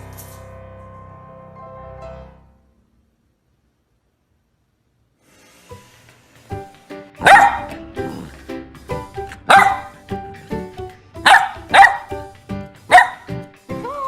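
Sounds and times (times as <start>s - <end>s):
background music: 0.0s - 2.9s, 5.4s - 14.0s
dog barking: 7.2s - 7.8s, 9.5s - 10.0s, 11.2s - 12.2s, 12.9s - 13.4s.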